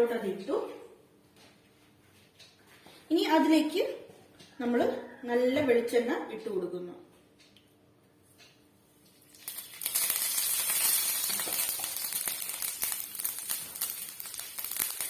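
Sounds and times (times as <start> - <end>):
oil sizzling and crackling: 9.0 - 15.0.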